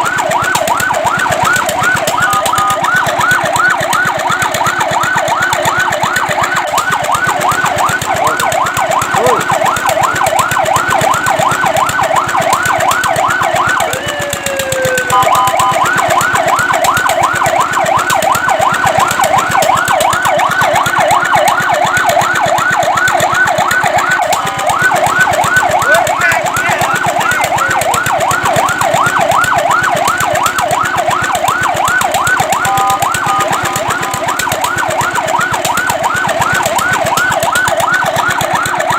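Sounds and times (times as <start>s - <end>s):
fire truck siren yelping: 0.0s - 38.9s.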